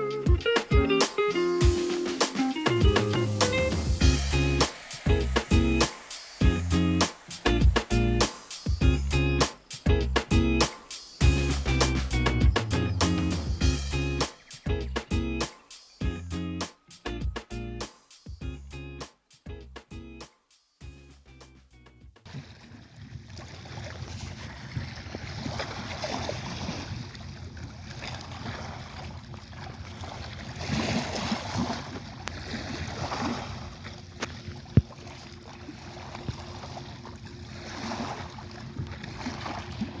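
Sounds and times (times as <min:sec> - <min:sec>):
sea waves washing ashore: 0:00.0 - 0:08.8, 0:22.3 - 0:40.0
wind rumble on microphone: 0:22.6 - 0:35.0.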